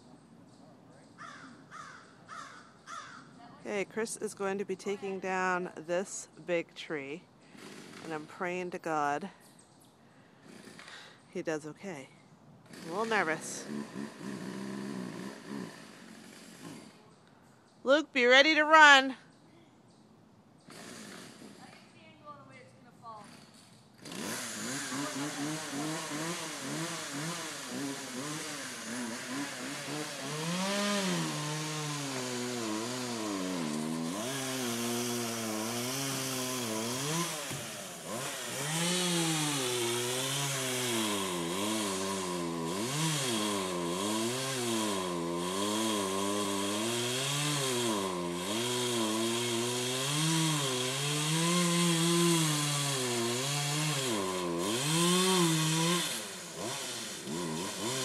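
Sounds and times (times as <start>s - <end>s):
chainsaw cutting tree trunk: 7.4s - 8.8s, 10.4s - 11.2s, 12.6s - 17.0s, 20.6s - 21.9s, 23.1s - 58.0s.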